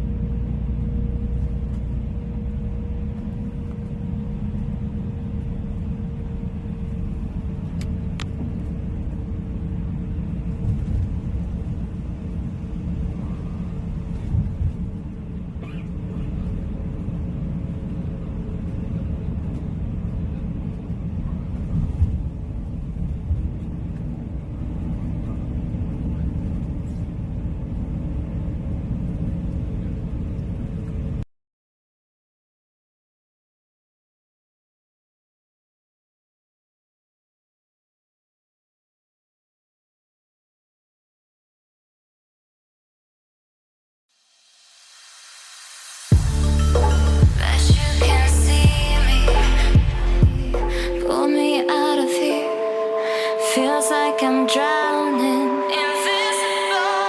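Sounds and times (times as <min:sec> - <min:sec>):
moving vehicle rumble: 0:00.0 - 0:31.2, 0:44.8 - 0:51.2.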